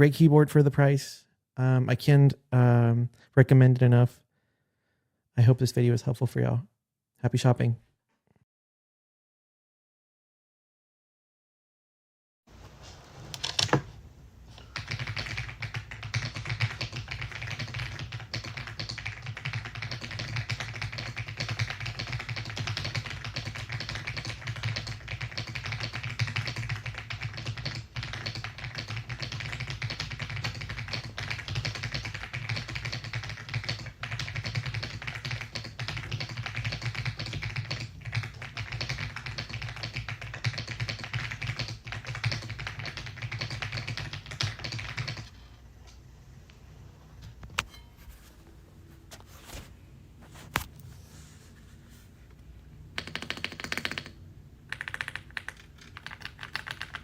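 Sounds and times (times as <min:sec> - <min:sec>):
mechanical keyboard typing: 0:14.8 - 0:45.3, 0:53.0 - 0:57.0.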